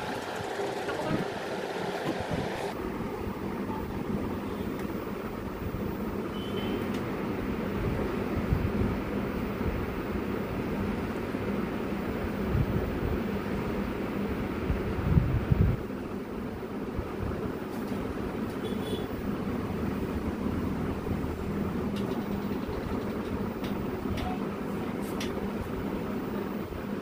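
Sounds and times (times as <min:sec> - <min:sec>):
low rumbling background noise: 0:02.4 - 0:27.0.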